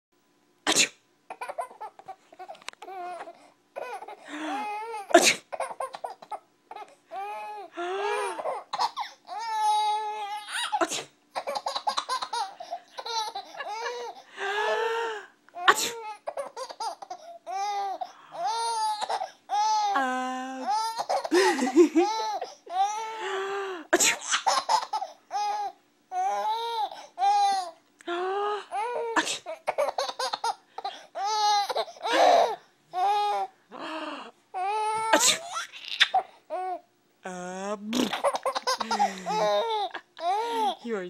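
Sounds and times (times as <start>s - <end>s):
adult sneezing: 0.7s - 1.0s, 5.2s - 5.5s, 10.8s - 11.2s, 15.7s - 16.1s, 23.9s - 24.2s, 29.2s - 29.6s
baby laughing: 1.3s - 2.2s, 2.8s - 14.9s, 15.6s - 20.0s, 20.6s - 23.1s, 24.0s - 27.7s, 28.8s - 33.4s, 34.7s - 36.7s, 38.1s - 40.8s.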